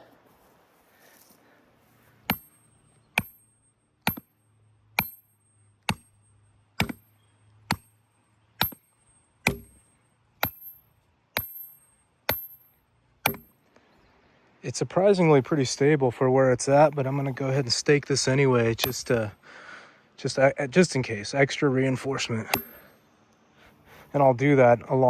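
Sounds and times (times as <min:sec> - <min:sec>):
hammer striking metal: 0:02.3 - 0:04.4, 0:05.0 - 0:13.6, 0:18.8 - 0:19.4, 0:22.5 - 0:23.0.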